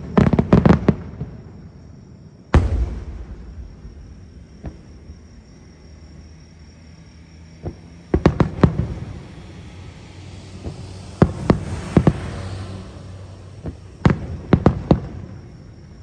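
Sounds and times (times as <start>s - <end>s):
fireworks bursting: 2.5s - 9.6s
low steady rumble: 2.6s - 7.1s.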